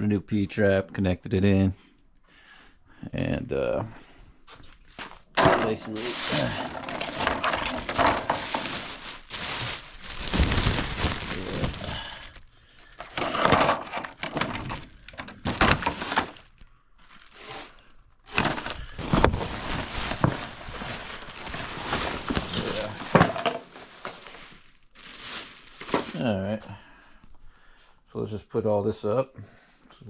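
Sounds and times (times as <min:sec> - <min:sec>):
tools clattering and knocking: 0:05.4 - 0:08.7, 0:13.0 - 0:16.4, 0:23.0 - 0:23.8.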